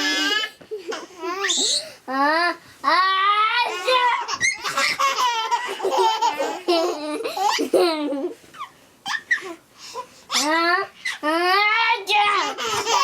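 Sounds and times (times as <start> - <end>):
young children laughing: 3.8 - 9.6.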